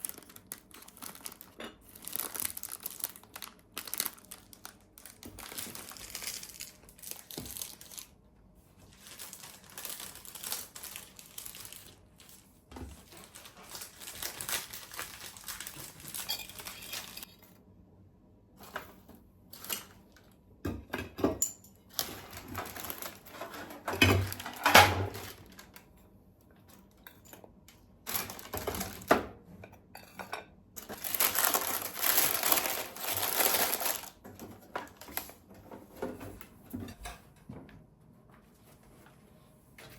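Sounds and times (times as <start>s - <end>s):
packaging crinkling: 0.0s - 8.2s, 8.8s - 17.3s, 22.0s - 25.8s, 28.1s - 29.1s, 30.8s - 34.2s.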